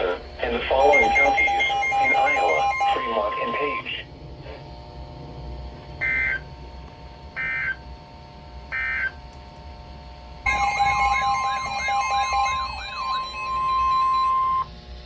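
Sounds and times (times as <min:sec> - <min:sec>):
screeching digital data bursts: 0:00.4 - 0:04.0, 0:10.5 - 0:14.7
warbling siren-like alarm: 0:00.7 - 0:04.0, 0:06.0 - 0:06.5, 0:07.4 - 0:07.8, 0:10.5 - 0:14.9
steady alert tone: 0:00.8 - 0:03.5, 0:10.5 - 0:14.7.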